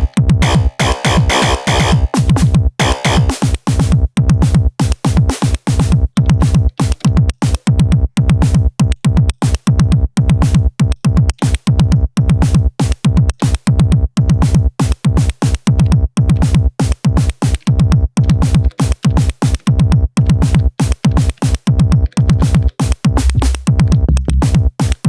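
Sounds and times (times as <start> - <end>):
steady held synth tone: 0.0 - 2.1
sharp hi-hat-like ticks: 0.0 - 9.8, 10.4 - 25.0
synthesizer kick drums: 0.0 - 25.0.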